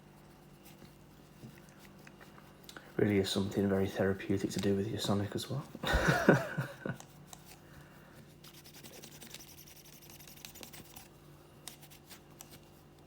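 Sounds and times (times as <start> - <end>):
low steady hum: 0.0 - 13.0
cloth rubbing and scratching: 8.3 - 11.2.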